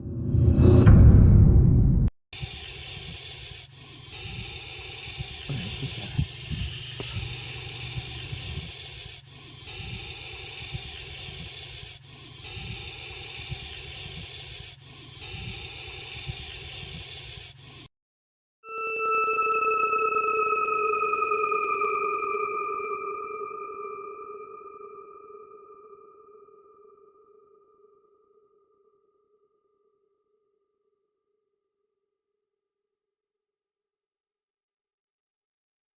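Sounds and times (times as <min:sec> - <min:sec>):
snake hissing: 0:02.4 - 0:17.9.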